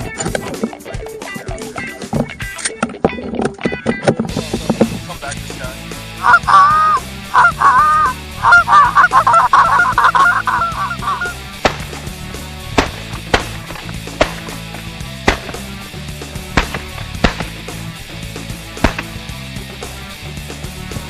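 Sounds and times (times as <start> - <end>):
goose honking: 6.2 - 11.4.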